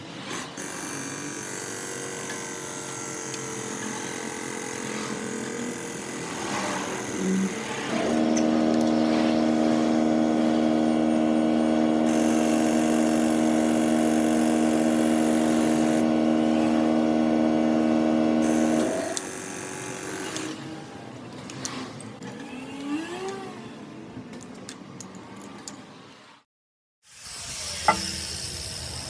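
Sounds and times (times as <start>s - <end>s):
workshop noise: 0.0s - 26.4s, 27.1s - 29.0s
machine motor humming: 5.4s - 20.6s.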